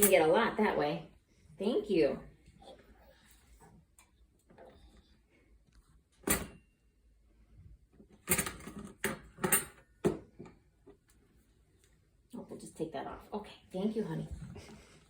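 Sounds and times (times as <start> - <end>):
dishes and silverware clattering: 6.2 - 6.6, 8.3 - 10.4.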